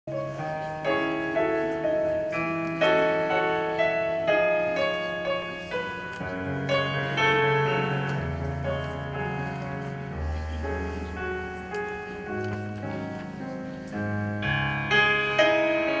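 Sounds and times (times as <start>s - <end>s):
slow keyboard melody with chords: 0.1s - 16.0s
deep bass notes: 6.3s - 13.3s.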